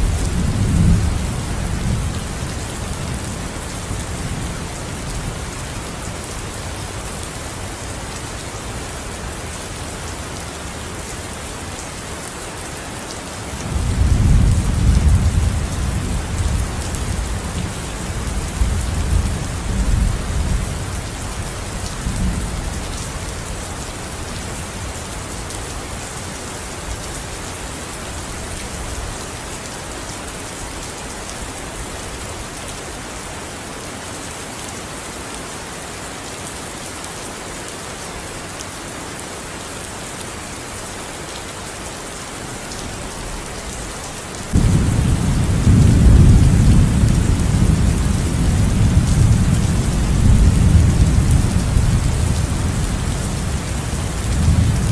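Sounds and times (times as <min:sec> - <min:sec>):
steady rain falling: 0:00.0 - 0:54.9
thunder rolling: 0:44.5 - 0:52.4.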